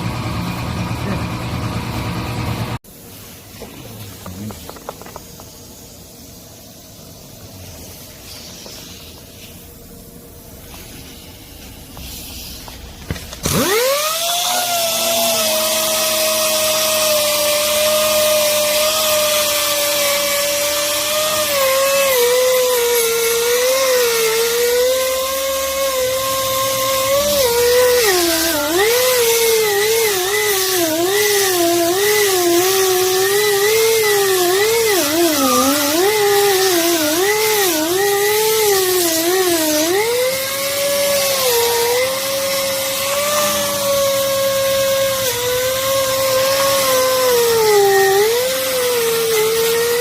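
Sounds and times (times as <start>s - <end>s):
pneumatic angle grinder whine: 0.0s - 2.8s, 11.9s - 50.0s.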